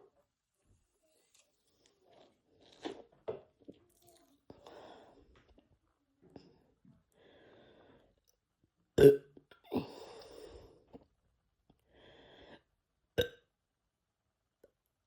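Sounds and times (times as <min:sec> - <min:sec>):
man burping: 0:09.0 - 0:09.2.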